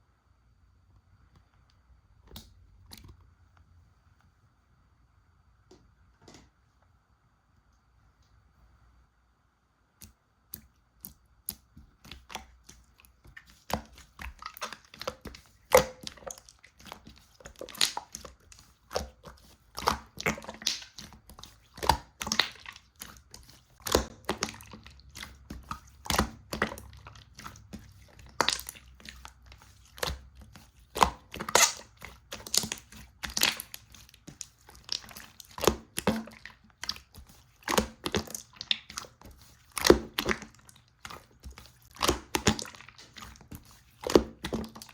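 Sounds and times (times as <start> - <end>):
slime kneaded sticky clicks: 30.9 - 36.2.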